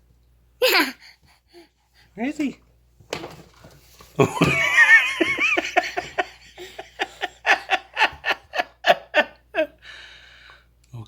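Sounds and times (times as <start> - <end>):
person laughing and giggling: 4.2 - 9.8.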